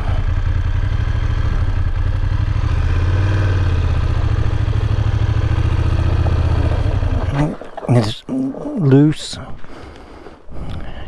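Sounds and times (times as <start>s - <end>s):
motorcycle engine at low revs: 0.0s - 7.3s.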